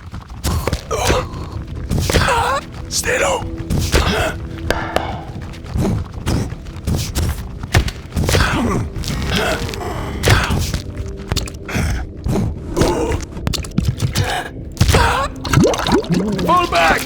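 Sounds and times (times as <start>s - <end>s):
thuds and knocks: 4.7s - 5.6s.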